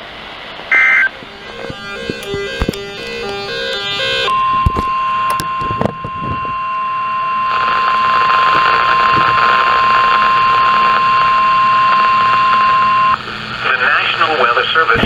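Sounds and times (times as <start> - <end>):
clicks: 0.6 - 6.6
long high alarm beep: 0.7 - 13.2.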